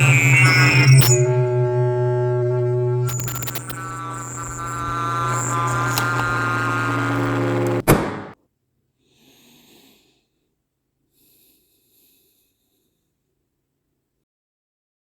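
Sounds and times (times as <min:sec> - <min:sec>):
sustained droning tone: 0:00.0 - 0:08.3
low hum: 0:00.0 - 0:08.4.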